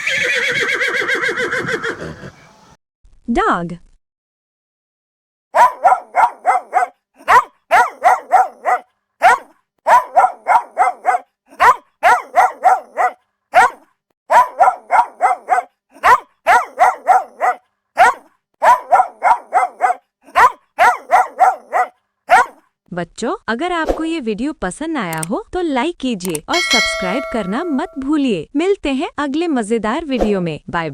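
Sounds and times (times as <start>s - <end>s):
dog barking: 5.6s - 22.6s, 26.9s - 28.0s.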